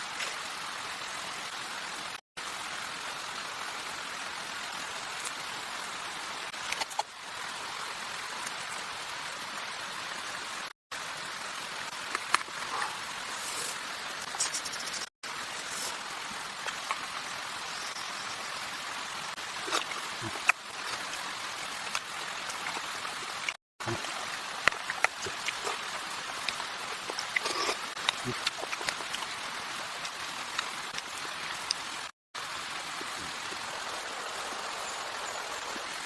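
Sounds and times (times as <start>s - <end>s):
water hissing: 12.6s - 18.0s, 19.1s - 31.3s.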